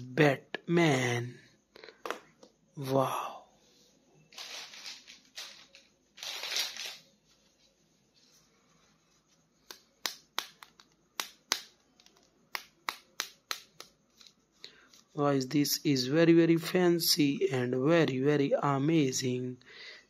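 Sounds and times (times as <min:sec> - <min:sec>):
packaging rustling: 0:04.3 - 0:07.6.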